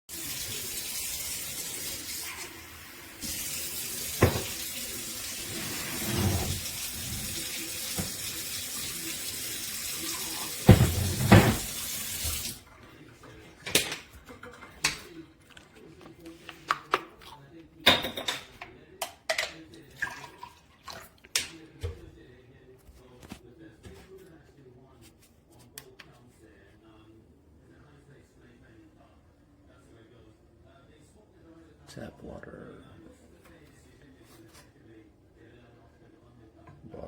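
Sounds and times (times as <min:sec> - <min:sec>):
water running from tap: 0:00.1 - 0:12.6.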